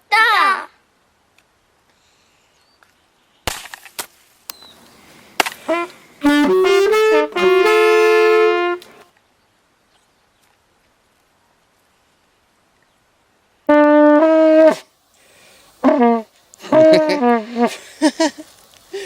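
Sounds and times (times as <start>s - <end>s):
wind instrument playing notes: 5.6s - 9.1s, 13.7s - 14.8s, 15.8s - 17.8s.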